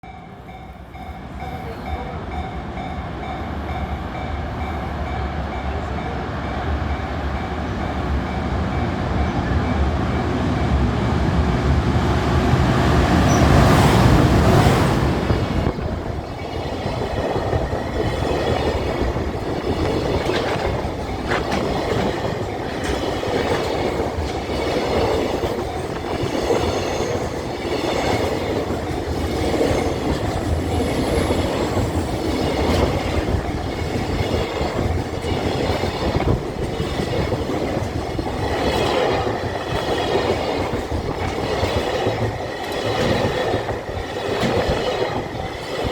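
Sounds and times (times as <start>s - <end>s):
crossing warning bell: 0.0s - 11.4s
train passing: 0.0s - 45.9s.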